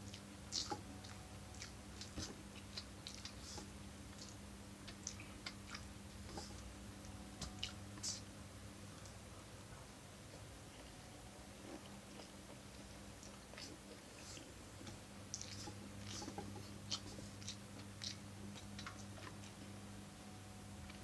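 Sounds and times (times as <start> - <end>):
wet chewing and mouth clicks: 0.0 - 6.7, 13.2 - 19.8
steady low hum: 0.0 - 21.0.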